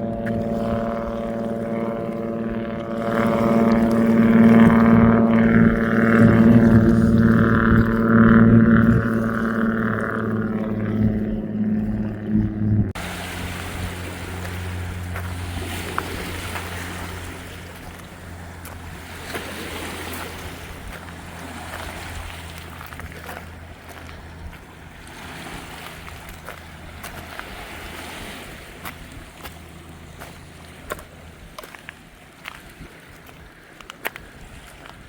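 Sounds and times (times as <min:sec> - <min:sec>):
wind noise: 0:00.0 - 0:33.6
boat motor humming: 0:00.0 - 0:35.0
water washing: 0:00.0 - 0:35.0.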